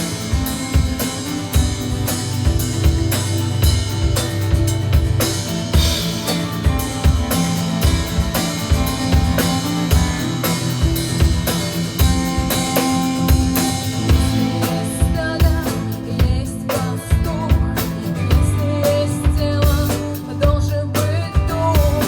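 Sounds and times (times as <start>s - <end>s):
drum kit beat: 0.0s - 22.0s
rock band playing: 0.0s - 22.0s.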